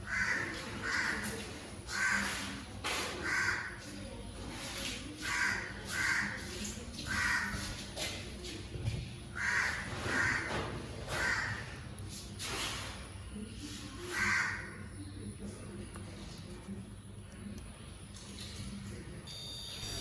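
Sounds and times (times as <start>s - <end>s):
crow cawing: 0.0s - 2.5s, 3.2s - 3.8s, 5.2s - 6.5s, 7.1s - 7.7s, 9.4s - 11.8s, 14.1s - 14.8s.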